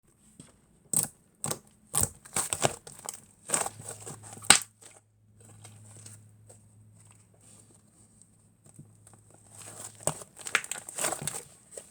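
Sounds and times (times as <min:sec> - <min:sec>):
slime crackling and squishing: 0:09.5 - 0:11.9.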